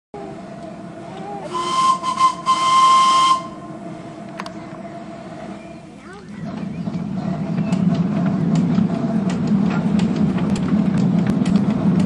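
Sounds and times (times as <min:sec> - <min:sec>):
steam whistle: 0:01.4 - 0:03.8.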